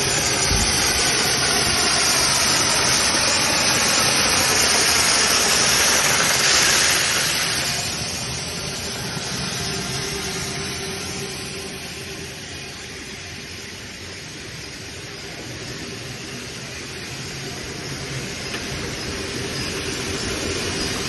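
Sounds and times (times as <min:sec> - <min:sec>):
loud hiss: 0:00.0 - 0:12.8.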